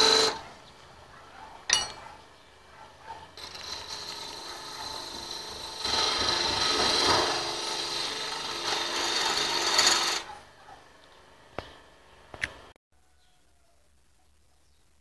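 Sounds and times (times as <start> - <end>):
wood lathe running: 0.0 - 0.4, 3.4 - 10.4
chisel cutting spinning wood: 0.0 - 0.5, 3.0 - 10.8.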